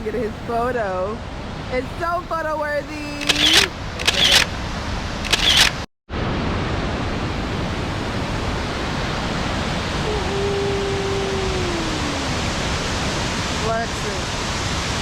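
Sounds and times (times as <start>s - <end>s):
waterfall rushing: 6.4s - 15.0s.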